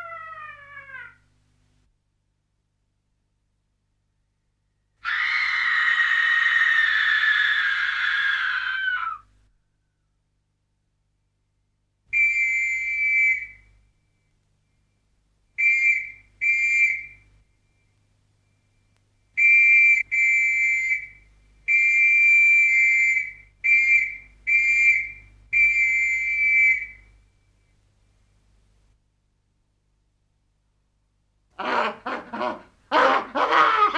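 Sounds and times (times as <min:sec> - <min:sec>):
high whistle blasts: 0:12.1 - 0:13.8, 0:15.6 - 0:18.8, 0:19.4 - 0:27.7.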